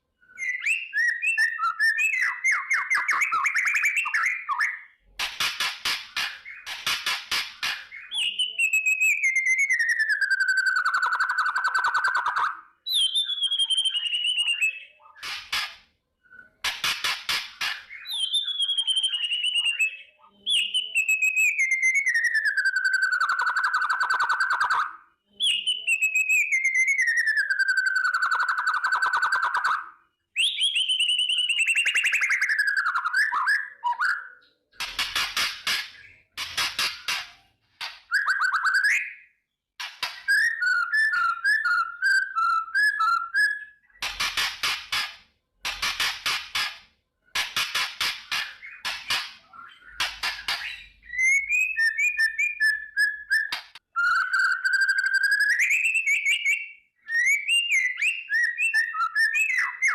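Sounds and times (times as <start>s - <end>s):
bird whistled notes: 49.7s - 59.9s.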